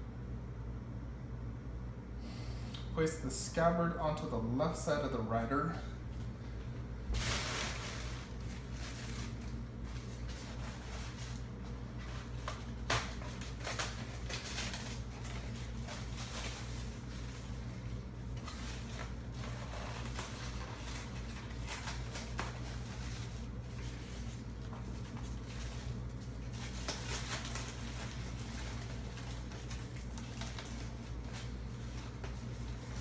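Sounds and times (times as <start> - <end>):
steady low hum: 0.0 - 33.0
clicks and rustles of handling: 7.6 - 33.0.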